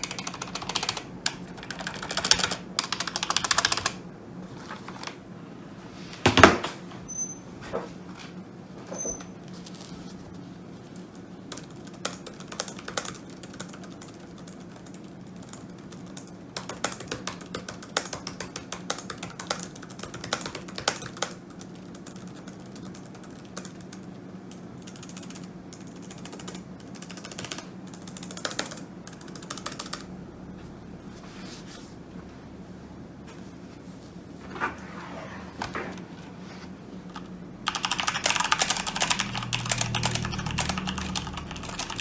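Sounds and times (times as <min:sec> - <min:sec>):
typing on computer keyboard: 0:00.0 - 0:04.0, 0:11.5 - 0:30.1, 0:37.1 - 0:42.0
low background hum: 0:00.0 - 0:42.0.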